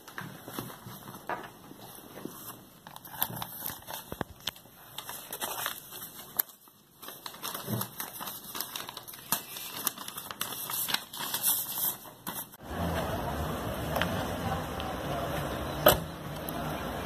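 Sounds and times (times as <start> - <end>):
vehicle engine running: 12.6 - 17.0.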